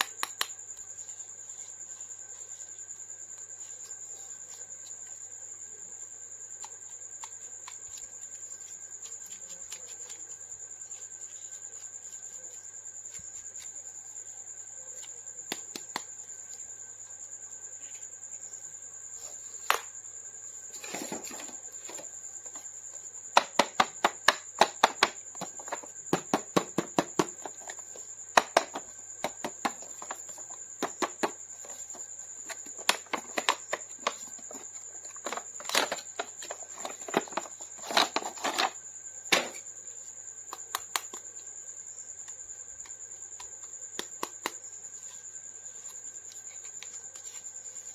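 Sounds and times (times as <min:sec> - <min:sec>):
plastic clicks and taps: 0:00.0 - 0:00.5
packaging crinkling: 0:27.2 - 0:39.6.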